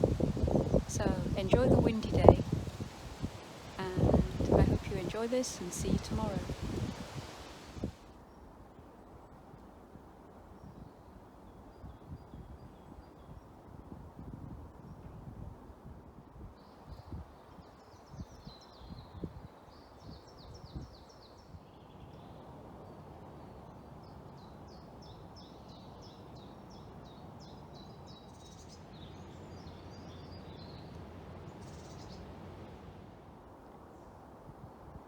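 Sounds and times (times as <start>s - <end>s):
songbird chirping: 0.0s - 8.0s, 21.2s - 33.2s
strong wind rumbling: 0.0s - 8.0s
wind crackle on microphone: 0.0s - 8.2s, 11.6s - 23.4s.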